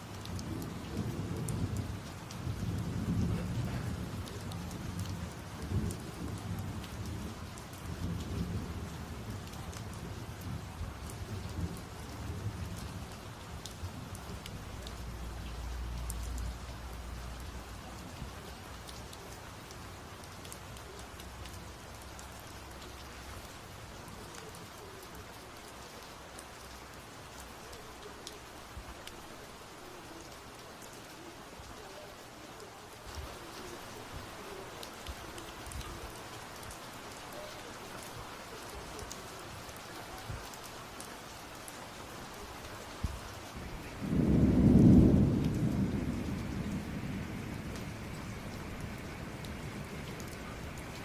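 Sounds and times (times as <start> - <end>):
heavy rain falling: 0.0 - 51.0
raindrops pattering close by: 0.0 - 51.0
low rumble of thunder: 0.2 - 18.5, 43.0 - 51.0.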